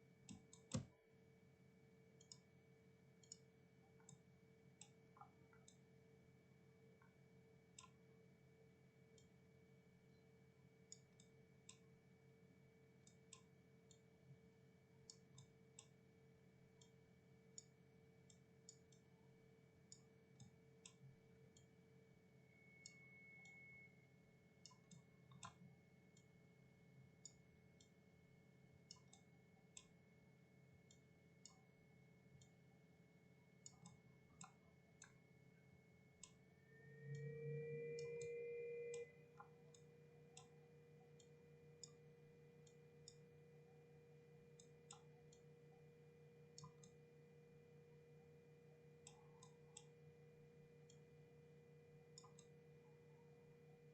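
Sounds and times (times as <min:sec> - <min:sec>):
low steady hum: 0:00.0 - 0:53.9
mouse and keyboard clicks: 0:00.3 - 0:00.9.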